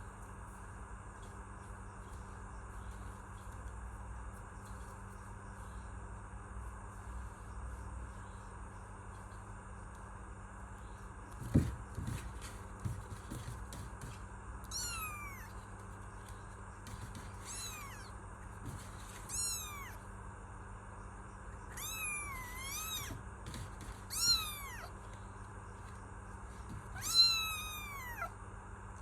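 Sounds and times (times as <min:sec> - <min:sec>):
kitten meowing: 0:14.6 - 0:15.6, 0:17.4 - 0:18.2, 0:19.3 - 0:20.0, 0:21.7 - 0:23.2, 0:24.1 - 0:25.0, 0:26.8 - 0:28.3.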